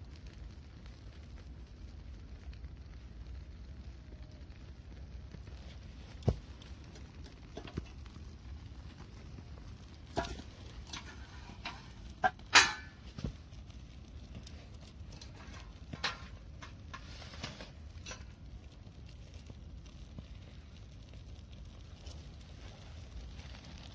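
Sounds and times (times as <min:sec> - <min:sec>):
faint steady hiss: 0:00.0 - 0:23.9
sharp snaps and knocks: 0:05.3 - 0:23.9.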